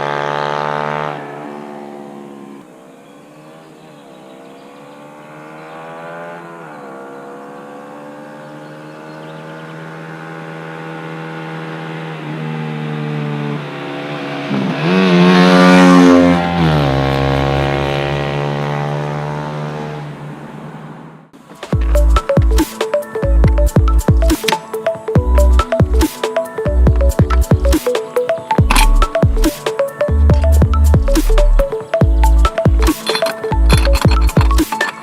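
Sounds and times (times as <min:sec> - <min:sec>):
motorcycle accelerating past: 0:00.0 - 0:21.1.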